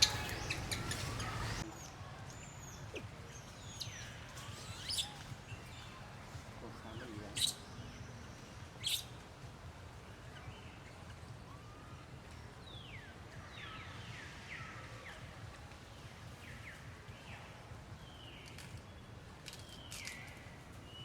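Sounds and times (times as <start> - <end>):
low outdoor rumble: 0.0 - 13.4.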